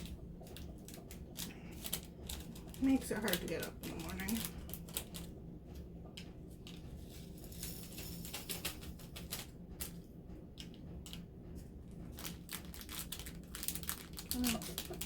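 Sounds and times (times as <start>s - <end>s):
small beads clicking and pattering: 0.0s - 5.3s, 6.6s - 10.0s, 11.9s - 15.0s.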